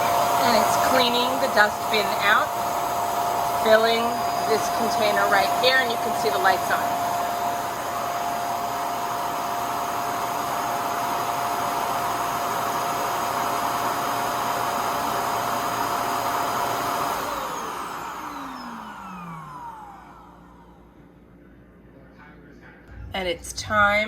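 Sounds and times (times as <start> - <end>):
suction motor whining: 16.8 - 20.6.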